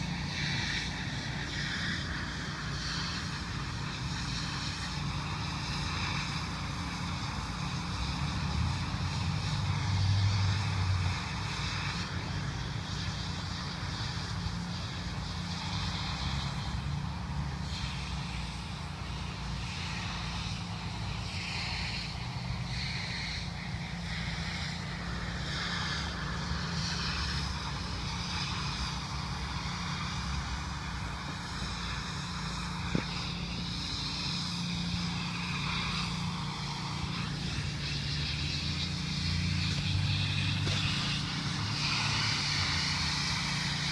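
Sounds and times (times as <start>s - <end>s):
engine drone: 0.0s - 43.9s
hiss: 0.0s - 43.9s
high whine: 12.0s - 43.9s.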